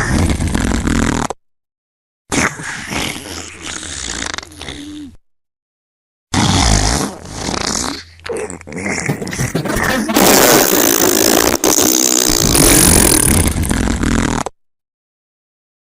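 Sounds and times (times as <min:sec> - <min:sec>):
loud raspy farts: 0:00.0 - 0:01.4, 0:06.3 - 0:14.6.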